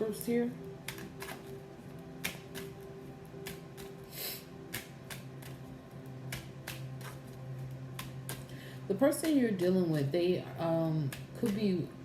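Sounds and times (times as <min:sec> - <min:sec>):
soft background music: 0:00.0 - 0:12.0
cards clicking: 0:02.2 - 0:08.6.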